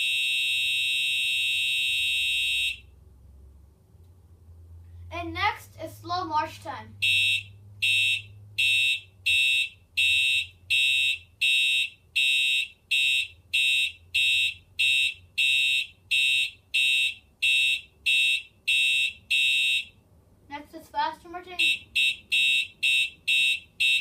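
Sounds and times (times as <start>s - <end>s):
fire alarm horn blasts: 0.0s - 2.9s, 7.0s - 20.0s, 21.6s - 24.0s.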